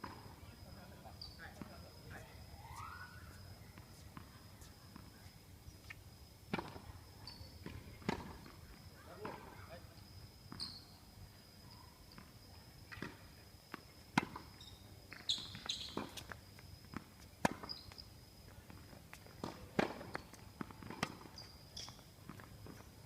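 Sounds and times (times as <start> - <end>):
tennis ball struck and bouncing: 19.4 - 21.9.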